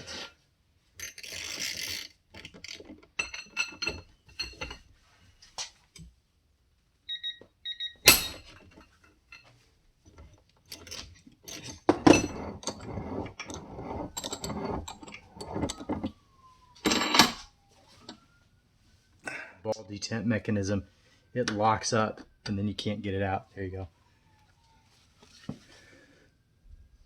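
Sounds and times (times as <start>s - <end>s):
short electronic beeps: 7.1s - 8.1s.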